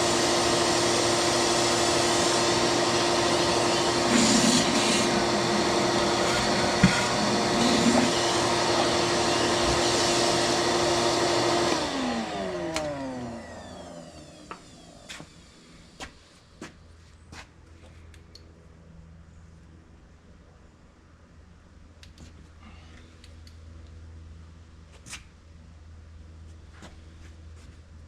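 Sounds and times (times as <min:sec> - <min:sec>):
vacuum cleaner running: 0:00.0 - 0:16.7.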